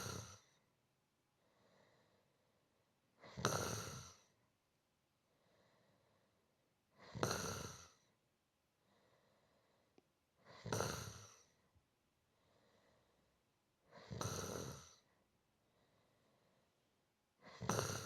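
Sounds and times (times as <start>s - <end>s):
person snoring softly: 0.0s - 0.6s, 3.2s - 4.4s, 6.9s - 8.2s, 8.9s - 11.6s, 12.4s - 15.1s, 17.4s - 18.0s.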